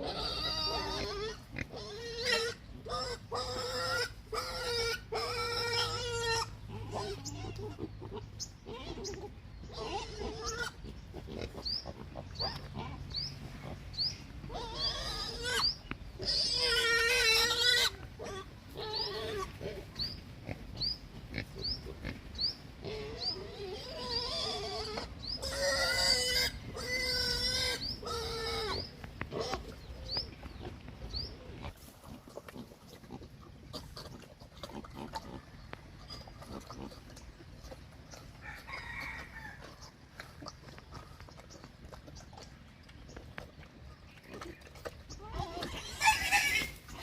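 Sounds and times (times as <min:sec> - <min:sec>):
pigs squealing and oinking: 0:00.0 - 0:47.0.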